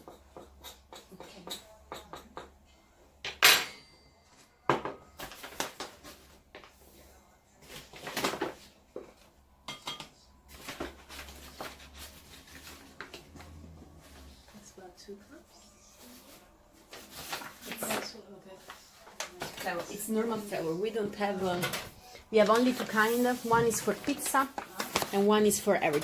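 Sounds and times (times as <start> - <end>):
kitchenware clattering: 0.0 - 2.6, 3.2 - 4.1, 9.7 - 10.8
bowls and utensils clinking: 3.2 - 5.1.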